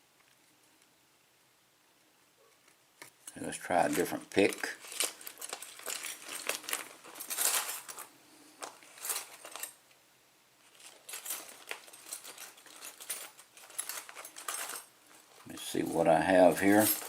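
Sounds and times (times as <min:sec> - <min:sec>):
metal lock picks clinking: 0:04.6 - 0:09.8, 0:10.7 - 0:17.0.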